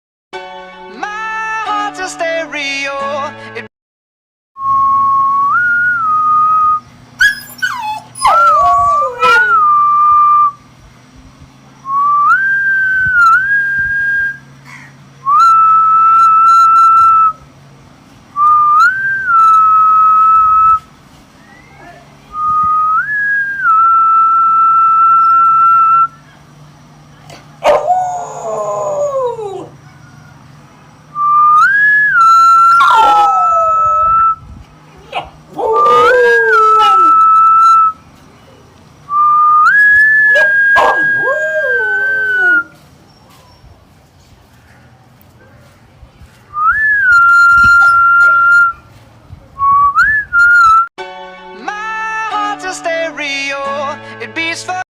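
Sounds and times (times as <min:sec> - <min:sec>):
rising whistle: 0:04.6 - 0:10.6, 0:11.8 - 0:14.5, 0:15.2 - 0:17.4, 0:18.4 - 0:26.2, 0:31.1 - 0:34.5, 0:35.7 - 0:38.1, 0:39.1 - 0:42.8, 0:46.6 - 0:48.9, 0:49.6 - 0:50.9
dog howling: 0:07.2 - 0:09.8, 0:27.6 - 0:30.4, 0:32.6 - 0:34.2, 0:35.1 - 0:37.4, 0:40.1 - 0:42.7, 0:47.7 - 0:48.7.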